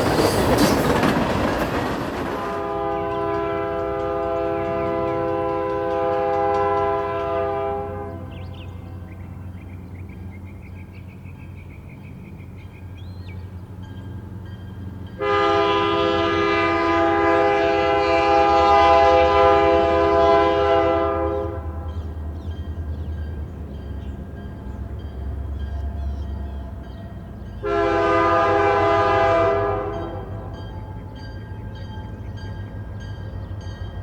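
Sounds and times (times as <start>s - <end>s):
diesel locomotive engine rumbling: 0.0s - 34.0s
locomotive air horn: 2.6s - 8.5s, 15.2s - 21.9s, 27.6s - 30.6s.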